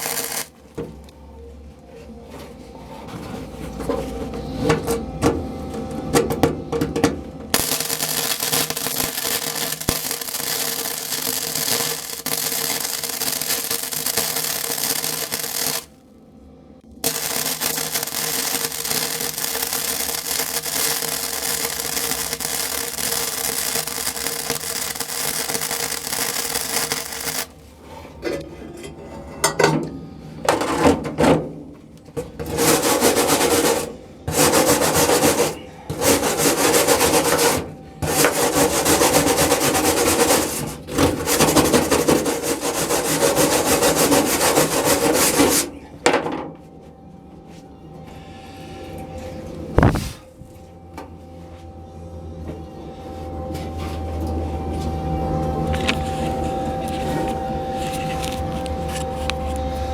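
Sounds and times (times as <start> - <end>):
arc welding crackling hiss: 0.0 - 0.5, 7.6 - 16.0, 17.0 - 27.6.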